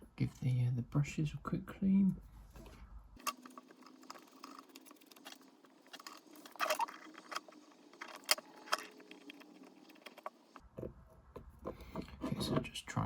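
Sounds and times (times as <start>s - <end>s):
hand tools clicking and scraping: 3.2s - 10.6s.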